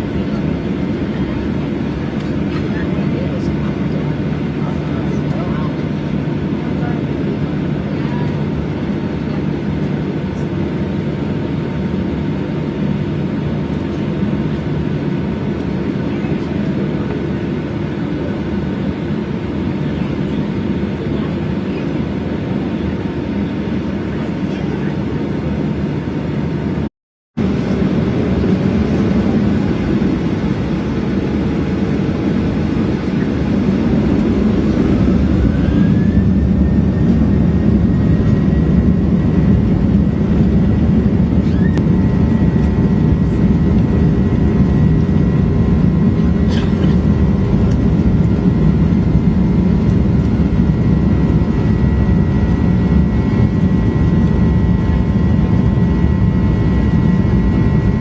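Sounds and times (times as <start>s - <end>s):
jet engine rumble in cabin: 0.0s - 58.0s
rising engine whine: 27.4s - 58.0s.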